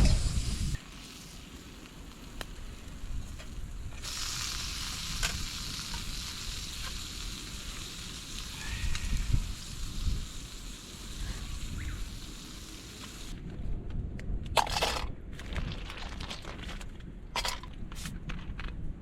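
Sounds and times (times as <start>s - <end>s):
meat sizzling on hot plate: 0.0s - 13.3s.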